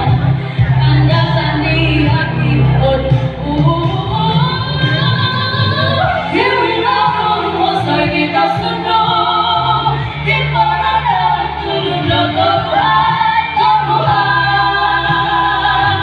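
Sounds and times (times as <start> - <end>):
group singing a chant: 4.8 - 16.0.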